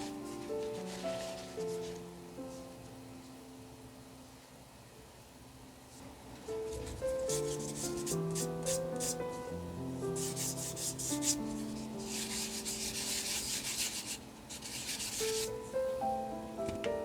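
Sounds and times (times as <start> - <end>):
soft piano music: 0.0 - 5.1, 6.0 - 17.0
sanding a small resin model: 7.2 - 9.4, 10.2 - 15.6.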